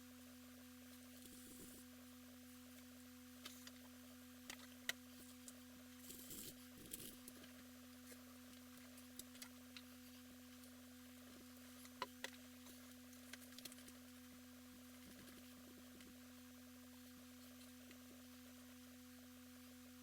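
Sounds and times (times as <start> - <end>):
faint steady hum: 0.0 - 20.0
small clicks and taps: 11.8 - 14.0.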